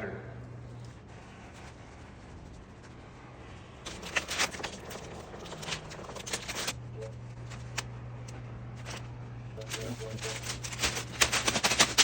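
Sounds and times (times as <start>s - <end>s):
steady low hum: 0.0s - 12.0s
clicks and scraping: 3.8s - 12.0s.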